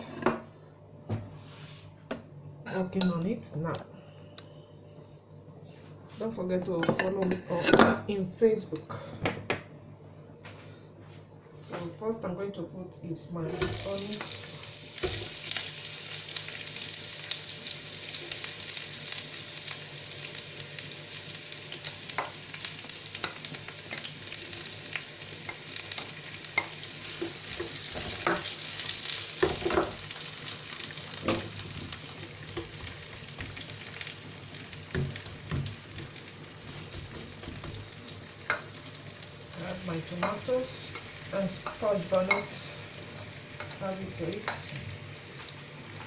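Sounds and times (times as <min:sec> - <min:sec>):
onions sizzling in oil: 0:13.5 - 0:46.0
spoon stirring against pot: 0:40.1 - 0:42.6.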